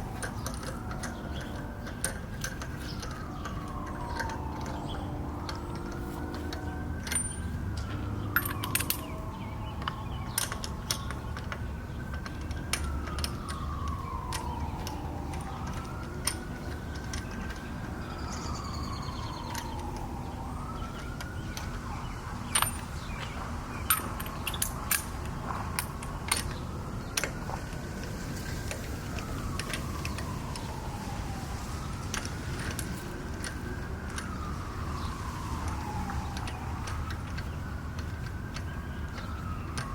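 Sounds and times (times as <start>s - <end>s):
hand tools clinking: 0.0s - 9.2s, 22.4s - 25.1s
siren wailing: 0.0s - 39.9s.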